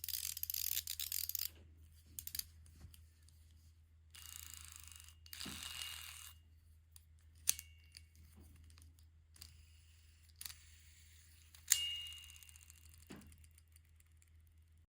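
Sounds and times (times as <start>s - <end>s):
fidget toy clicks: 0.0s - 1.5s, 9.4s - 14.7s.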